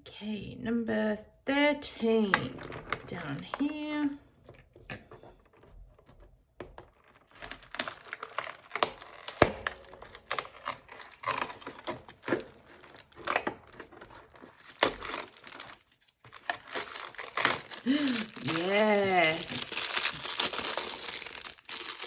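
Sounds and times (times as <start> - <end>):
packaging crinkling: 2.5 - 4.5, 5.2 - 22.0
cardboard being torn open: 6.9 - 22.0.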